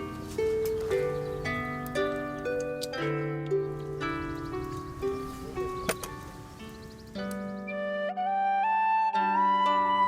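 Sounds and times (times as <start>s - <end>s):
soft plucked string music: 0.0s - 7.8s.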